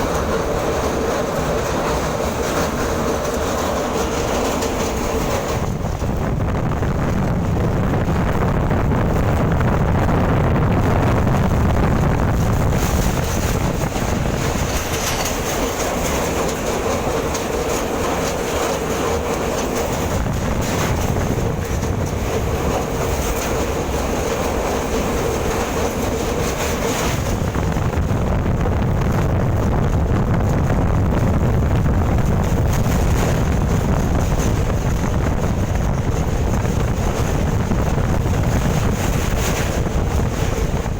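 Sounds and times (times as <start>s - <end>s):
train rumbling and rattling: 0.0s - 40.9s
wind on microphone: 0.0s - 40.9s.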